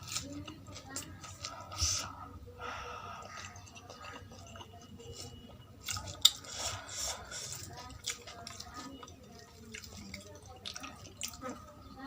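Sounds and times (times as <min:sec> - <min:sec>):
wet chewing and mouth smacks: 0:03.2 - 0:12.0.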